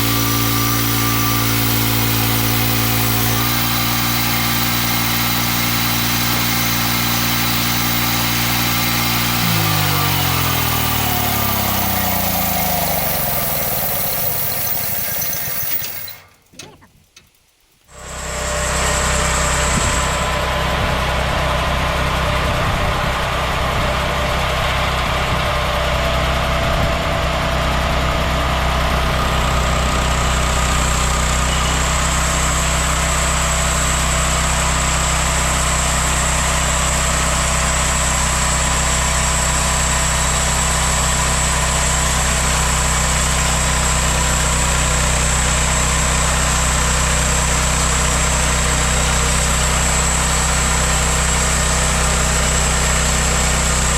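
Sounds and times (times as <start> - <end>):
thin high whine: 0.0 - 16.9
band sawmill engine running: 0.0 - 53.9.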